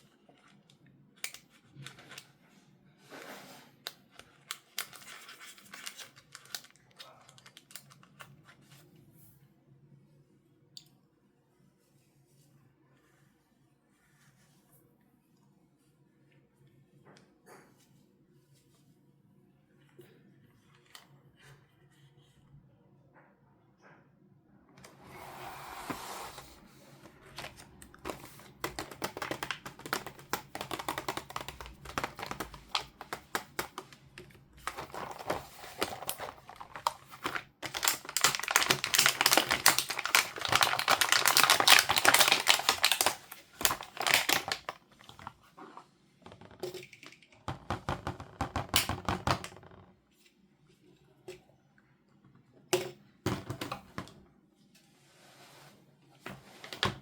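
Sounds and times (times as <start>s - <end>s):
packaging rustling: 4.5s - 8.2s, 25.8s - 45.4s
plastic toy pieces clicking: 28.0s - 33.9s.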